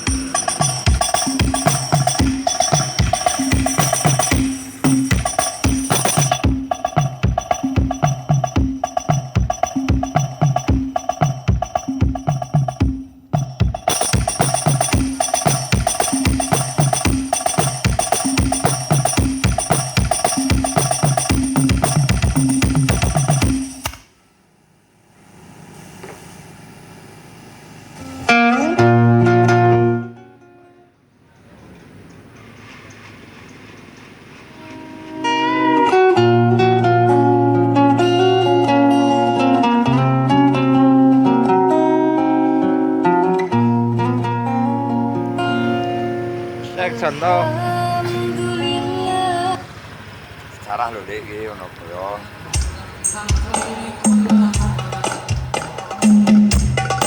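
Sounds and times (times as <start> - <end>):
music with loud drum beat: 0.0 - 24.0, 52.6 - 57.0
plucked string music: 28.3 - 31.0, 34.6 - 49.6.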